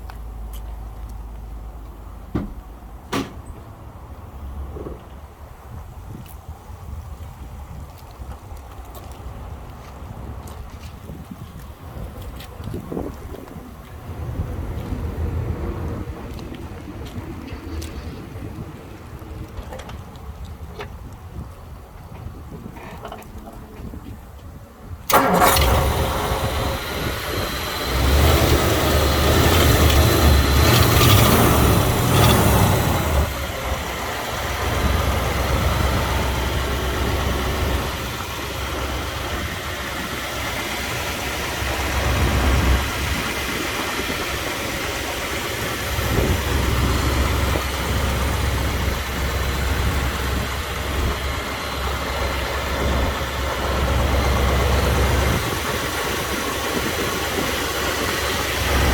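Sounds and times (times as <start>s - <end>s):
car engine idling: 25.1s - 58.9s.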